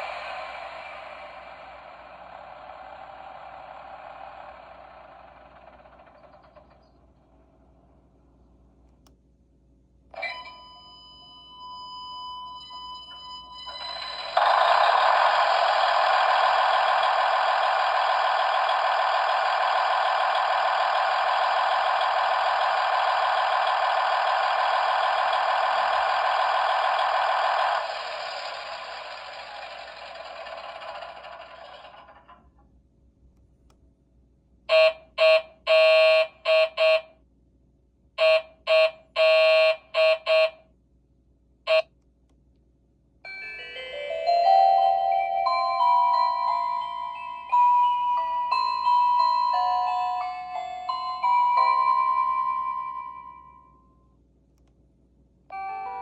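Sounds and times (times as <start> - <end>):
electric bell ringing: 10.2 - 14.6, 43.3 - 53.9, 55.5 - 56.0
short steady chime: 43.3 - 54.0, 55.5 - 56.0.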